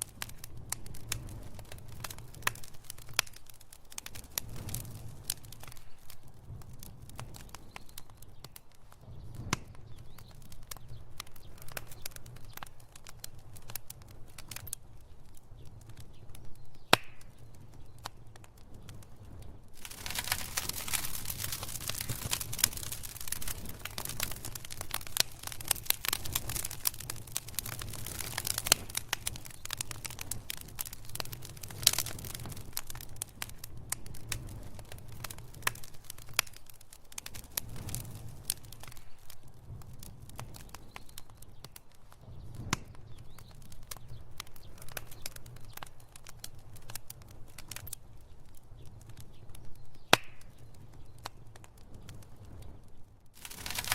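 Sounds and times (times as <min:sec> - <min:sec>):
wood fire crackling and popping: 0:00.0 - 0:53.9.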